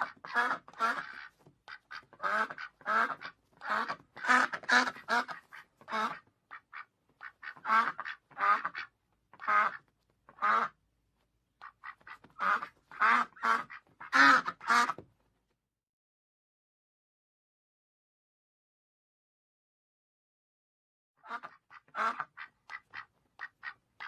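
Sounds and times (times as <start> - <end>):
duck quacking: 0.0 - 10.8, 11.6 - 15.0, 21.2 - 24.0.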